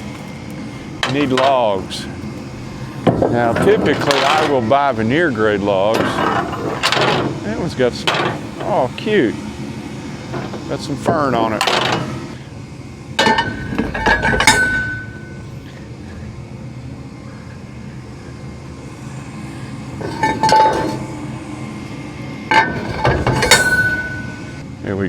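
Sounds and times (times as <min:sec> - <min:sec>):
metal clanking on steel deck: 0:01.0 - 0:09.2, 0:10.3 - 0:12.4, 0:13.2 - 0:15.5, 0:20.0 - 0:24.6.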